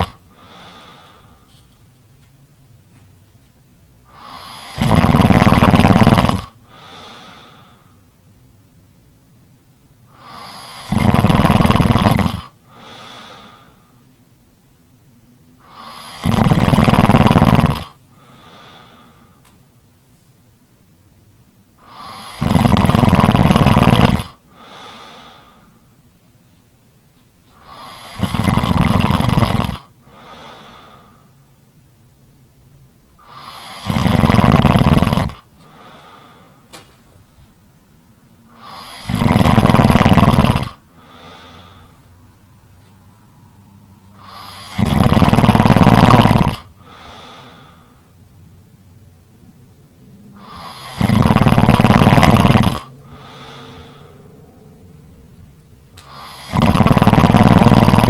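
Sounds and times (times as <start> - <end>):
loud snoring: 0.0 - 1.4, 4.1 - 7.8, 10.1 - 13.8, 15.6 - 19.1, 21.8 - 25.6, 27.6 - 31.1, 33.2 - 36.4, 38.5 - 41.9, 44.1 - 47.9, 50.3 - 54.2, 56.0 - 58.0
quiet breath out: 0.3 - 1.8, 6.6 - 8.1, 12.6 - 14.1, 18.1 - 19.5, 24.5 - 26.0, 30.0 - 31.4, 35.6 - 37.1, 40.9 - 44.7, 46.8 - 48.2, 52.9 - 54.8.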